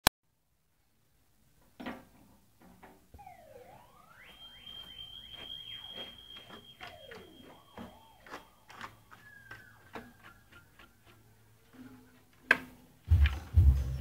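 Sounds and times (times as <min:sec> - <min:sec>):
electronic siren tones: 0:03.1 - 0:11.3.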